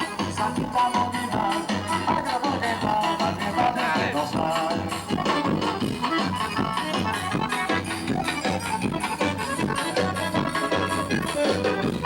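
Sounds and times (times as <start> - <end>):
live band playing dance music: 0.0 - 12.0.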